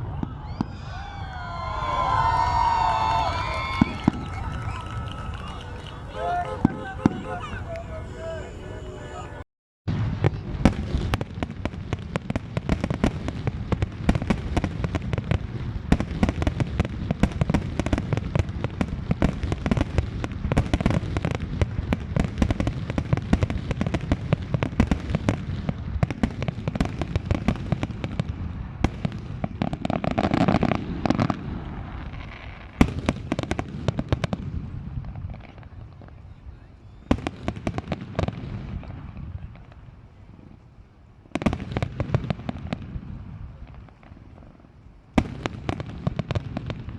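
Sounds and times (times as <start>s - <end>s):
fireworks bangs and crackling: 0.0s - 46.9s.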